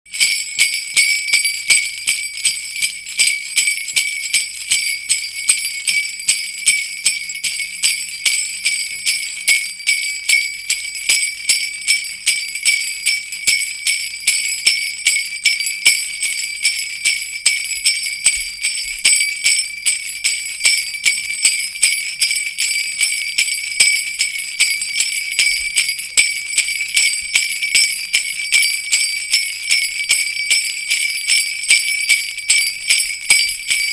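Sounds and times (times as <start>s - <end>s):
jingle bells shaken: 0.1s - 33.9s.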